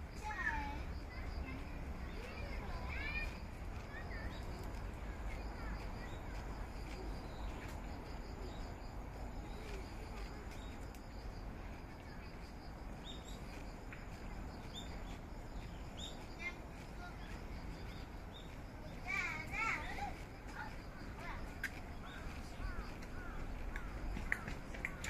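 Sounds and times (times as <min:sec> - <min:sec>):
high insect trill: 0:00.0 - 0:25.0
bird chirps: 0:14.6 - 0:16.5.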